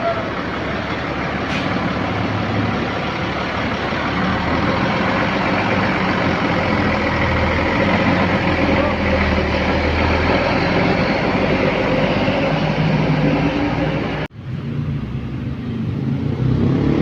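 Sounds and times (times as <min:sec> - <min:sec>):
diesel bus engine running: 0:00.0 - 0:16.9.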